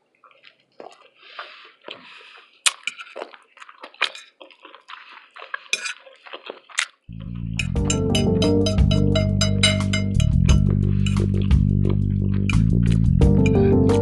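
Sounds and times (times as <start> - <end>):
wet chewing and lip smacks: 0.0 - 7.8, 10.2 - 14.0
music with guitar bass and drums: 7.6 - 14.0.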